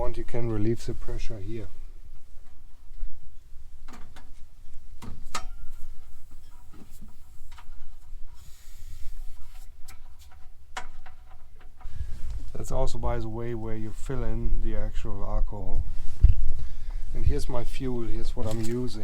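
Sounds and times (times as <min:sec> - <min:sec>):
hiss of air: 0:08.4 - 0:09.3.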